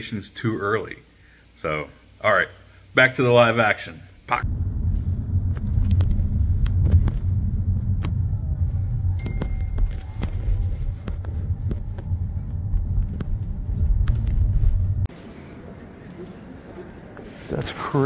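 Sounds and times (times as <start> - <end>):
loud low rumble: 4.3 - 15.1
steady high tone: 7.3 - 12.8.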